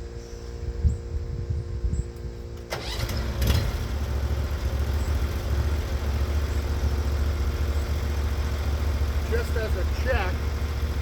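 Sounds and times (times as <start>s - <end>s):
gas engine running: 2.7s - 11.0s.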